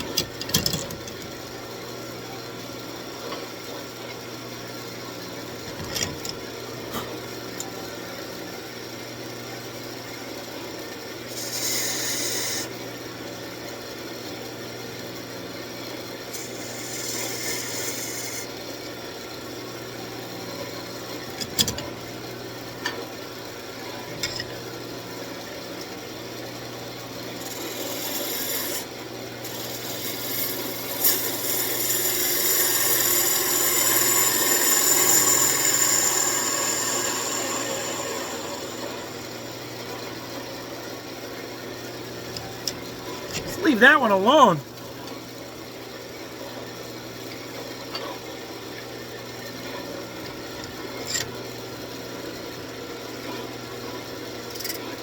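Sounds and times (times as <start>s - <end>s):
wood lathe motor humming: 31.8s - 39.4s.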